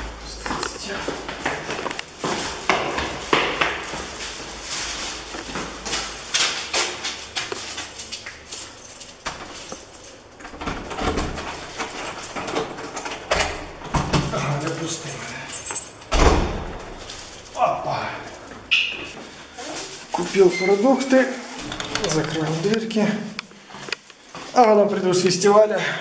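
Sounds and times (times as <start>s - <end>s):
knocks and clatters of handling: 21.6s - 22.8s.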